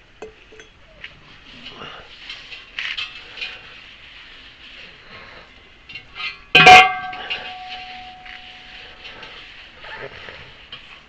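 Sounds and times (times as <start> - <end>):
metallic clank ringing: 6.6 - 8.9.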